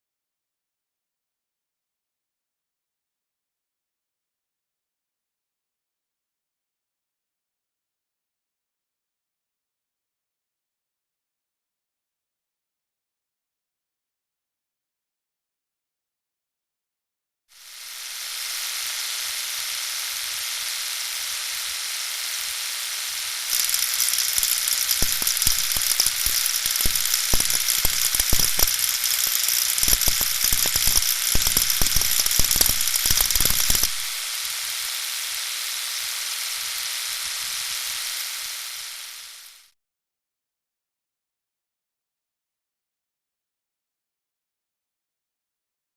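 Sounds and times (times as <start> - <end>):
engine running hiss: 17.6 - 39.7.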